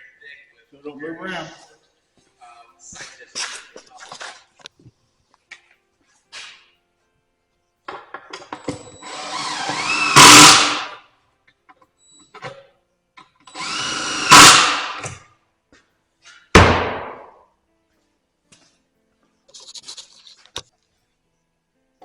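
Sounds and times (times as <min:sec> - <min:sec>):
power drill driving screws: 0:08.3 - 0:11.0, 0:13.4 - 0:15.2
sharp knock: 0:16.6 - 0:17.4.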